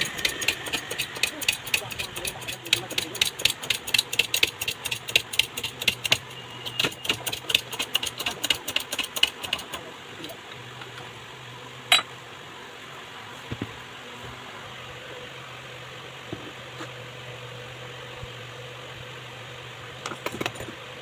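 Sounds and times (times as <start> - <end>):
ceiling fan ticking: 0.0 - 6.2.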